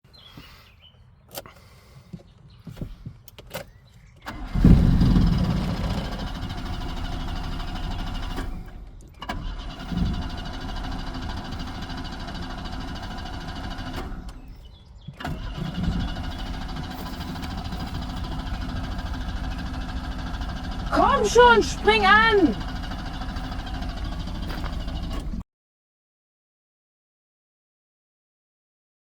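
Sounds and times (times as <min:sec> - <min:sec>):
car engine cranking: 0:02.7 - 0:25.4.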